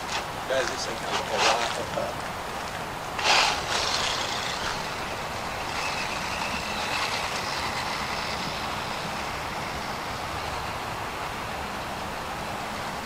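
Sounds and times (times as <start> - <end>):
rough tyre noise: 0.0 - 13.0
rc truck motor whining: 3.1 - 11.8.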